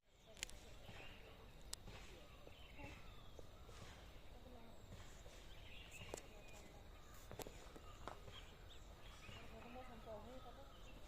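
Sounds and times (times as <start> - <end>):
distant bird chirps: 0.0 - 11.0
faint sharp clicks: 0.3 - 0.7.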